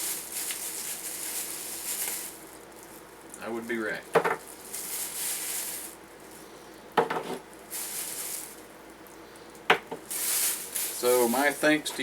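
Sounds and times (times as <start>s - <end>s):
rustling: 0.0s - 3.6s, 4.3s - 6.6s, 7.4s - 8.7s, 10.0s - 12.0s
small items clinking in a metal tin: 7.7s - 8.6s, 10.0s - 12.0s.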